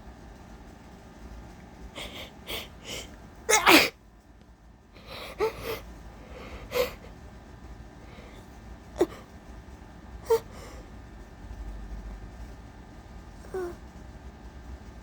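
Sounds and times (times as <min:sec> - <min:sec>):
shaky gasping breaths: 0:01.9 - 0:04.0, 0:04.9 - 0:11.1
woman sneezing: 0:03.5 - 0:03.9.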